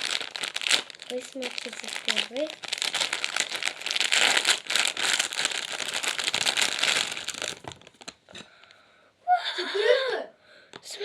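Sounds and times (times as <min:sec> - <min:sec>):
packaging crinkling: 0:00.0 - 0:08.7.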